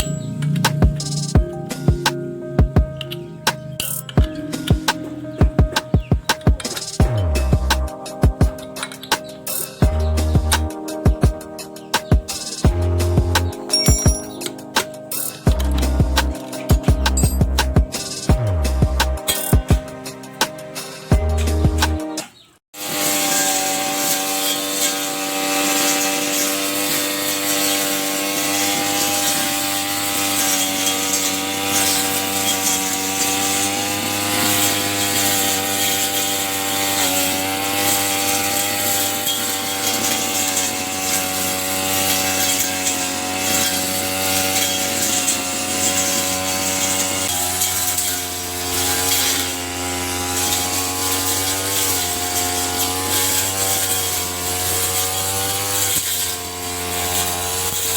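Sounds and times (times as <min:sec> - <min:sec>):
brush cutter engine running: 0:12.1 - 0:20.2, 0:22.8 - 0:57.9.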